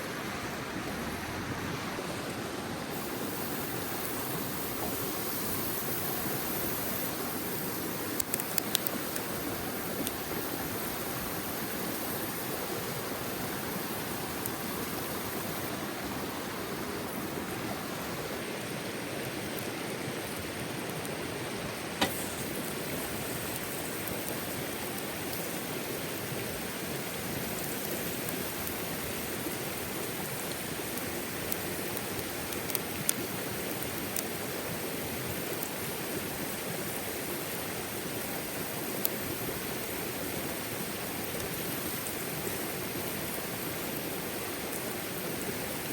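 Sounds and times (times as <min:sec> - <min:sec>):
mountain river rushing: 0:00.0 - 0:45.9
sharp pops: 0:22.0 - 0:22.7.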